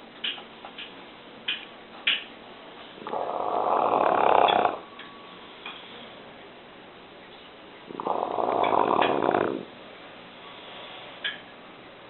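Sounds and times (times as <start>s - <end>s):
dog snoring: 3.0s - 4.8s, 7.9s - 9.7s.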